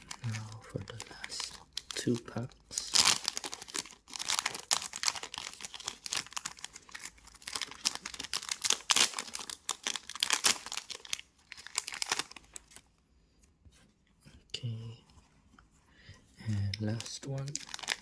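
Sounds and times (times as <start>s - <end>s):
card pack wrappers tearing and crinkling: 0.0s - 12.8s, 16.6s - 18.0s.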